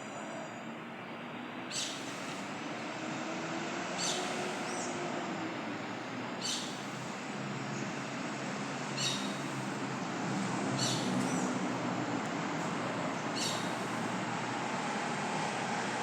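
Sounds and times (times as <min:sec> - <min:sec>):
city traffic roar: 0:00.0 - 0:16.0
birds calling: 0:01.7 - 0:02.3, 0:04.0 - 0:04.9, 0:06.4 - 0:07.0, 0:09.0 - 0:09.6, 0:10.8 - 0:11.6, 0:13.2 - 0:14.0.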